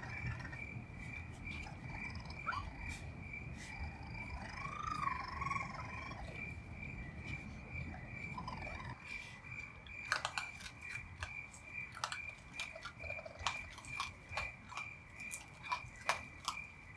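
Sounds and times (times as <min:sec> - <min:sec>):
night insect trill: 0:00.0 - 0:16.9
baby raccoons crying: 0:04.2 - 0:06.6.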